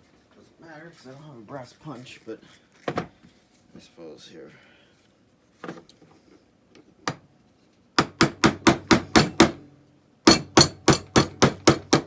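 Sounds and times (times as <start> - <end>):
hammer tapping on metal: 8.0 - 9.6, 10.3 - 12.0.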